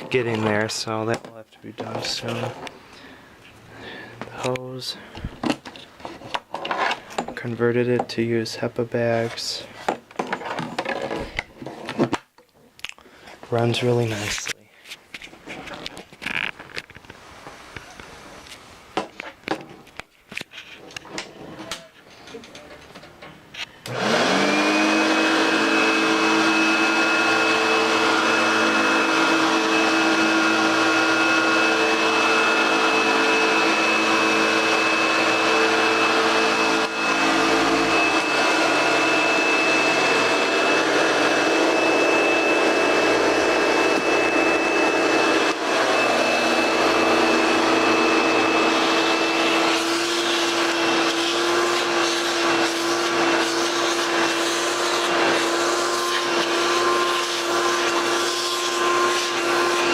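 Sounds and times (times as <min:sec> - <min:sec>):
vacuum cleaner motor running: 0:23.8 - 0:59.9.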